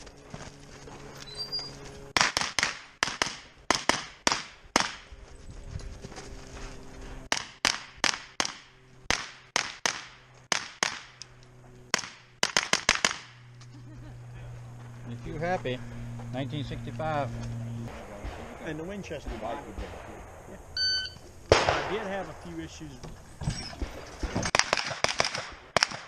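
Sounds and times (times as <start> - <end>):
rifle firing rapid shots: 2.2 - 5.0, 11.9 - 13.3, 21.5 - 22.2, 23.9 - 26.0
shot timer beep: 20.8 - 21.2.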